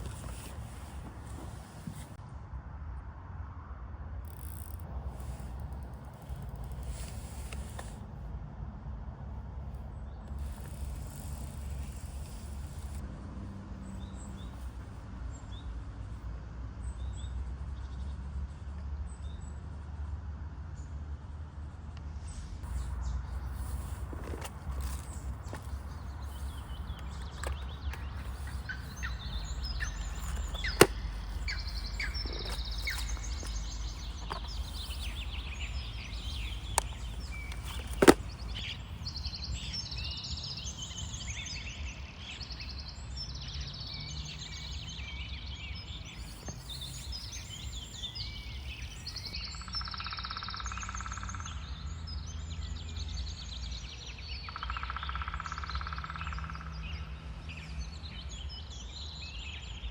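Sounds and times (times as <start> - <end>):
low rumble of wind: 0.0 - 49.8
small birds chirping: 22.6 - 59.9
sharp clicks: 23.6 - 38.7.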